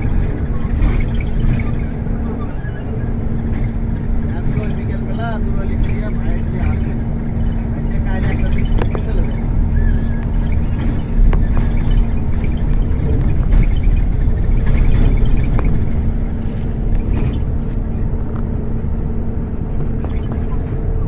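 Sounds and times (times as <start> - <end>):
road vehicle rumble: 0.0 - 21.0
small knocks and rattles: 5.7 - 18.6.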